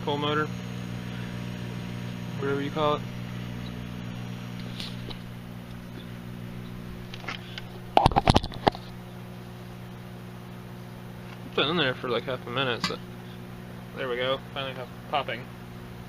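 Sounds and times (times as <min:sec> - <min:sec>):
microwave oven humming: 0:00.0 - 0:16.0
sharp popping: 0:03.4 - 0:09.0.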